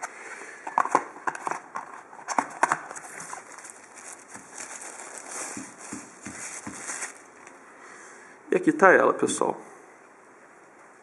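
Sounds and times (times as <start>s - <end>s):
cardboard packaging rustling: 0.8s - 7.5s.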